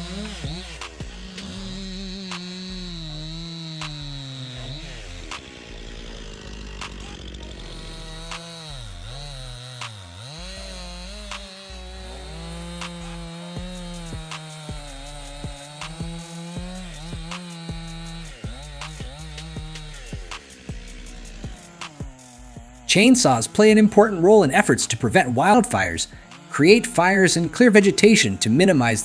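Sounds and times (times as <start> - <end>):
chainsaw cutting wood: 0.0 - 29.0
sharp clicks: 3.8 - 4.2, 21.8 - 22.0.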